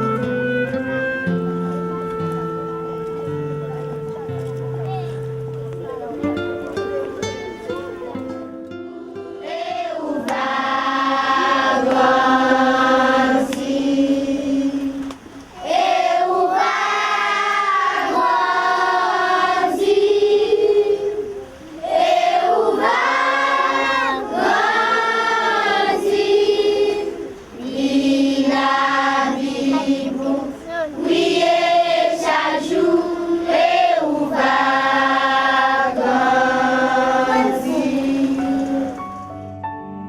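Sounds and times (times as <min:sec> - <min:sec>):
choir singing slow melody: 0:08.8 - 0:39.4.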